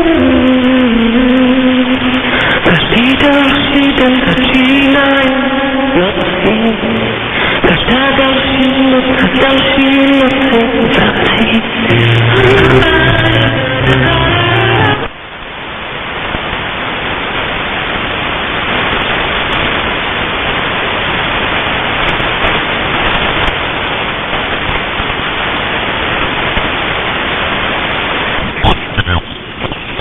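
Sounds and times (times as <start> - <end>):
radio static hiss: 0.0 - 30.0
music over shortwave radio: 7.7 - 15.1.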